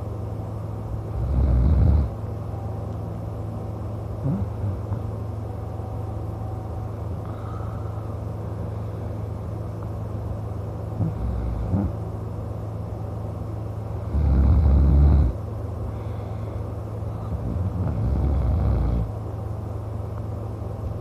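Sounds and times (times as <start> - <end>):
steady low hum: 0.0 - 21.0
man snoring: 1.1 - 2.2, 4.2 - 5.0, 11.0 - 12.0, 14.0 - 15.4, 17.3 - 19.1.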